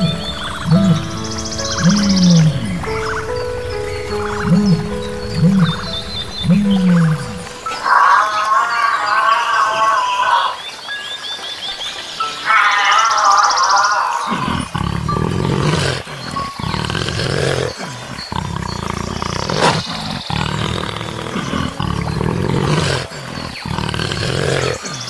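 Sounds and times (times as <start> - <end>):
higher wavering call: 0.0 - 8.2
lion roaring: 0.0 - 10.6, 12.5 - 25.0.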